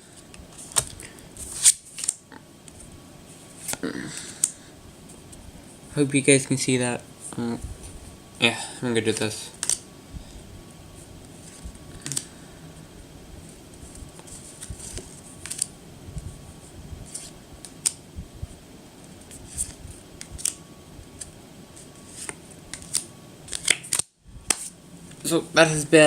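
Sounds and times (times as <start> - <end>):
low room noise: 0.0 - 26.0
trading cards snapping and rustling: 0.5 - 2.8, 9.0 - 9.8, 11.4 - 12.3, 14.2 - 15.7, 19.3 - 20.6, 22.1 - 24.7.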